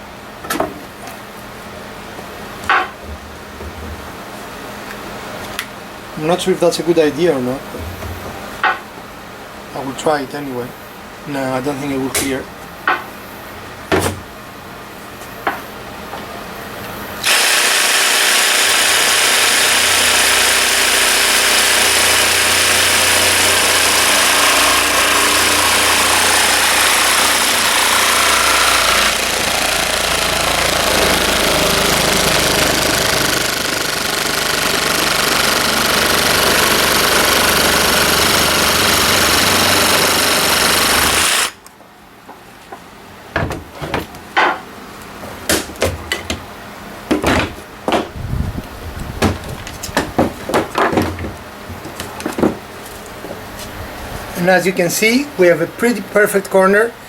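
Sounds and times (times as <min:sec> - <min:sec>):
electric jigsaw cutting wood: 0:17.2 - 0:41.6.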